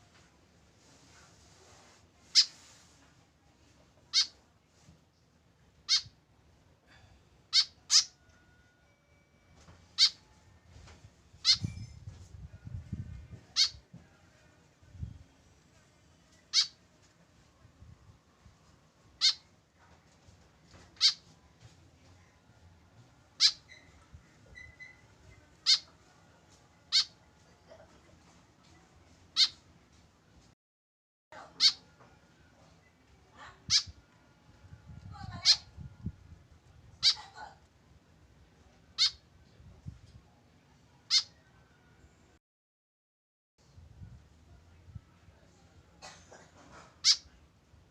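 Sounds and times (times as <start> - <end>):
woodswallow high calls: 7.6 - 8.2.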